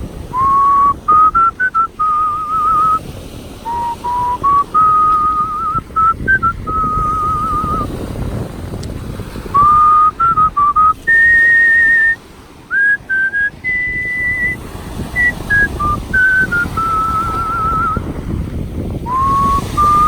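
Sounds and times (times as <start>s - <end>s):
person whistling a melody: 0.3s - 3.0s, 3.7s - 7.9s, 9.6s - 14.6s, 15.2s - 18.0s, 19.1s - 20.0s.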